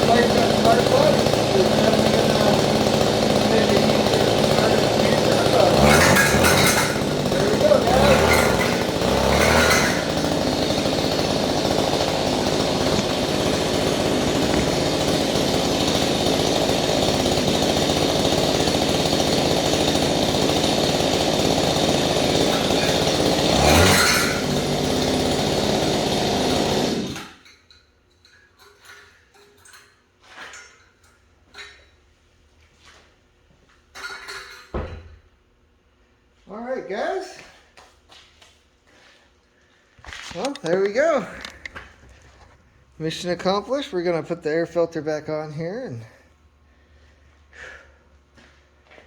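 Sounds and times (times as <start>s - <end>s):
small gasoline engine running: 0.0s - 27.4s, 40.2s - 46.3s.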